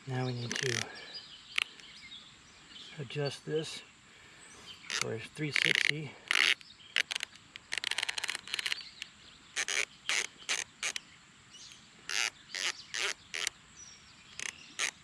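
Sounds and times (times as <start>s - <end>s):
sprinkler head ratcheting clicks: 0.4s - 0.9s, 4.9s - 11.0s, 14.3s - 15.0s.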